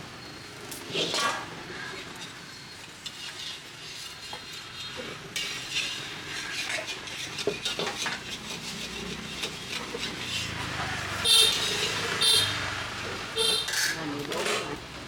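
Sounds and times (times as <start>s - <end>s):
frying sizzle: 0.0s - 13.9s
metal utensils clinking in a pan: 2.0s - 12.5s, 13.4s - 14.8s.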